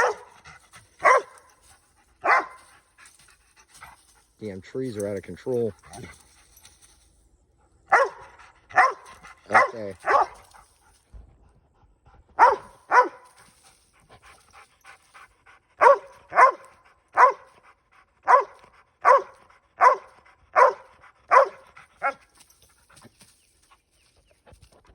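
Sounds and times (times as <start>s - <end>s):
dog barking: 0.0s - 0.4s, 1.0s - 1.5s, 2.2s - 2.6s, 7.9s - 10.4s, 12.4s - 13.3s, 15.8s - 17.6s, 18.2s - 22.2s.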